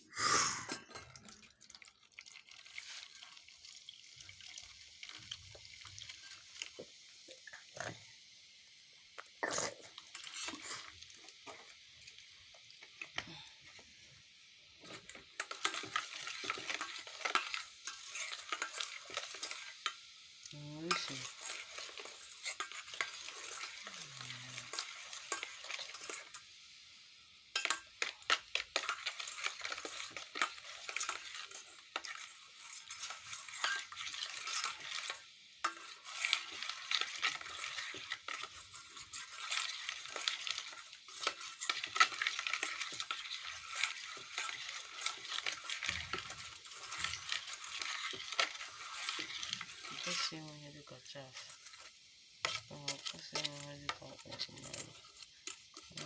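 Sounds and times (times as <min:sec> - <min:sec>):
food sizzling in a hot pan: 0:00.0 - 0:56.0.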